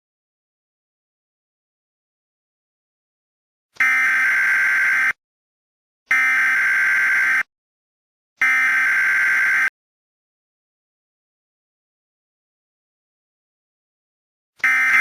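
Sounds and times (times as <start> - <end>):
digital data tone bursts: 14.6 - 15.0.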